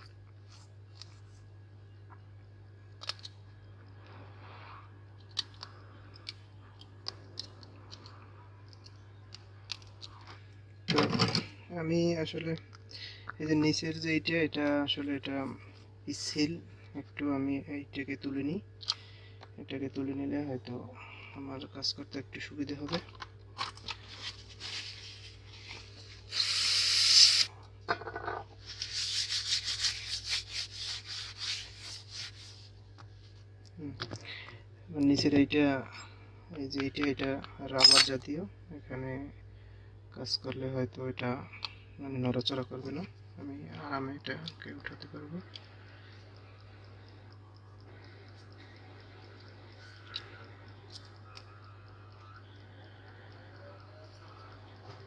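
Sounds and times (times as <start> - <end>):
low electrical hum: 0.0 - 55.0
soft rustle: 24.0 - 26.3, 28.6 - 33.4.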